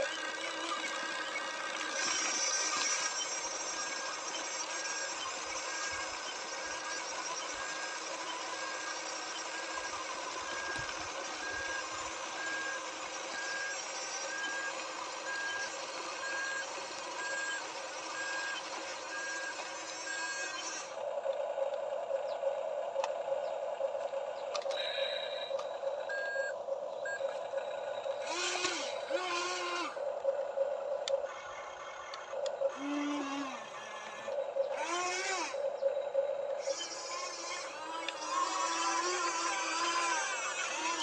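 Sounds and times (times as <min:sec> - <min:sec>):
high reversing beeps: 0:00.0 - 0:41.0
small motors whirring: 0:00.0 - 0:41.0.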